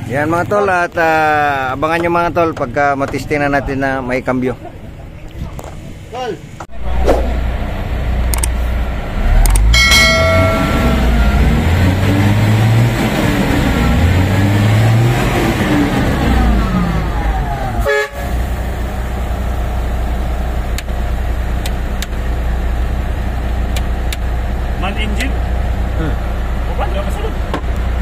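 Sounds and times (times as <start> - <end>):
diesel truck engine revving: 6.8 - 28.0
truck horn: 17.8 - 18.6.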